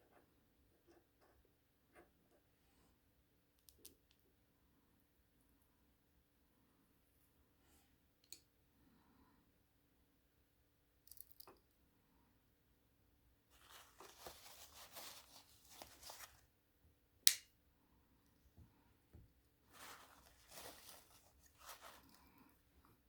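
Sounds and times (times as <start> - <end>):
knife tool snapping click: 17.3 - 17.5.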